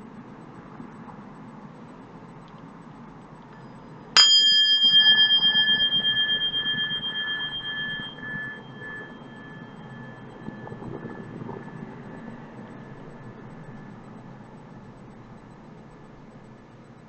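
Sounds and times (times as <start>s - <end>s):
low background hum: 0.0s - 17.0s
small metal bell ringing: 4.2s - 11.2s.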